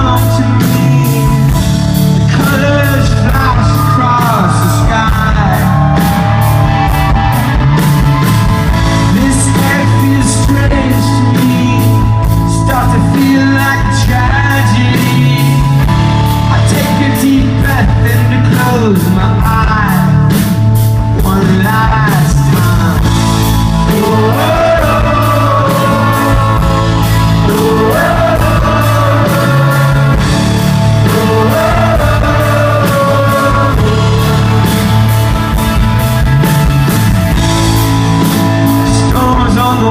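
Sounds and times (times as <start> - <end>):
lead vocal singing: 0.0 - 7.4, 8.8 - 15.9, 21.2 - 35.7, 38.7 - 39.9
live rock band playing: 0.0 - 39.9.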